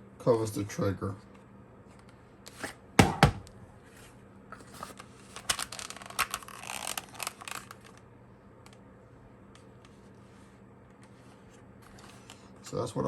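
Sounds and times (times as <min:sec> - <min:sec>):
sharp knocks: 0:03.0 - 0:03.5.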